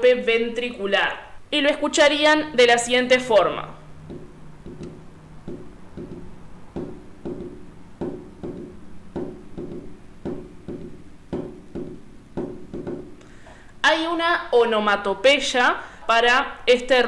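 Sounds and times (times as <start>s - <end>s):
heartbeat thumps: 3.8s - 13.6s.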